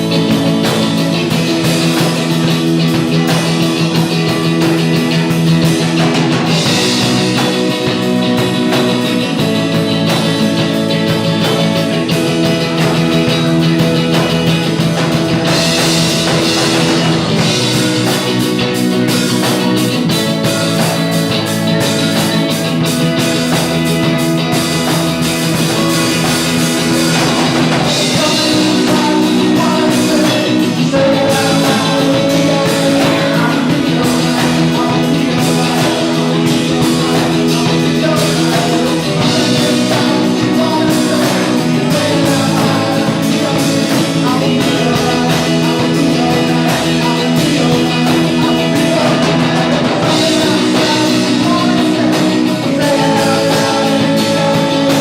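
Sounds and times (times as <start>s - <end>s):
rock band playing: 0.0s - 55.0s
sung vocals: 0.0s - 55.0s.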